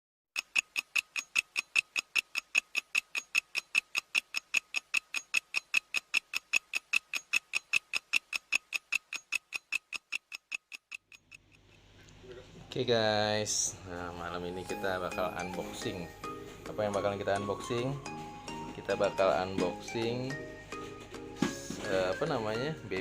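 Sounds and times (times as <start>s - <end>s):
clock ticking: 0.4s - 11.9s.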